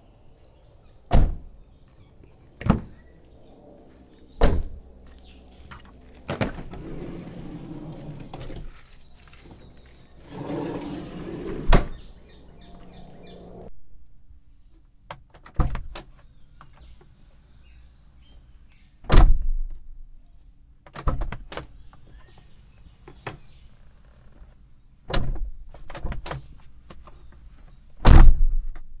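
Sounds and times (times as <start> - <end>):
vehicle doors slamming: 1.1 - 1.5.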